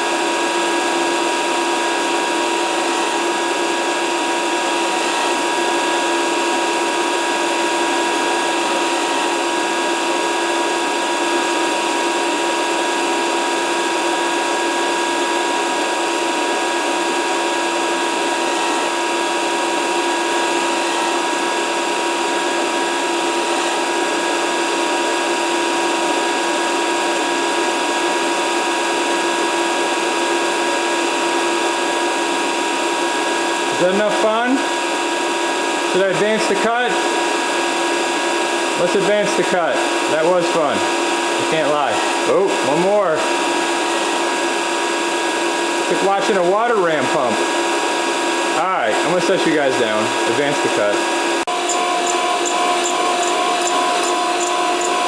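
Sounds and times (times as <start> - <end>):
grinder grinding metal: 2.2 - 3.6, 4.3 - 6.0, 8.3 - 9.8, 18.0 - 24.2, 38.7 - 45.0, 45.8 - 55.0.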